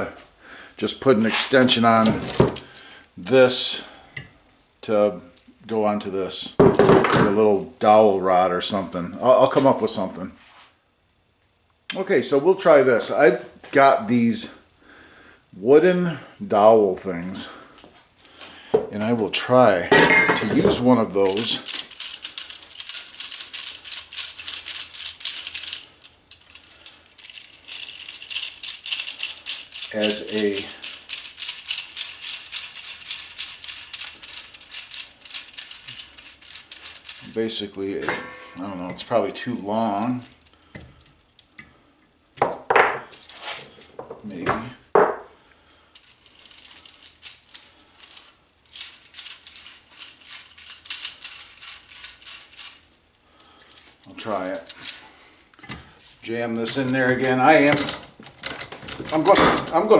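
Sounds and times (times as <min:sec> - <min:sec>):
metal parts and tools clinking: 0:01.2 - 0:04.7, 0:06.6 - 0:07.4, 0:19.9 - 0:41.7, 0:42.4 - 0:45.3, 0:46.0 - 0:55.8, 0:56.4 - 0:59.9
small hard objects rattling: 0:01.4 - 0:03.9, 0:19.9 - 0:38.8, 0:46.0 - 0:55.0, 0:56.6 - 0:59.9.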